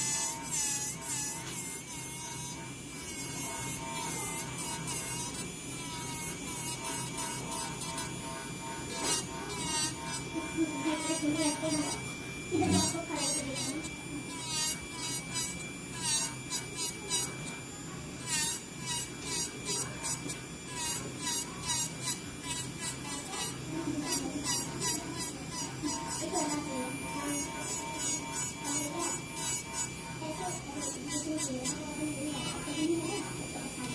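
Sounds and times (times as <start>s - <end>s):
bit grinding nail polish: 0.0s - 33.9s
electric nail drill whine: 0.0s - 33.9s.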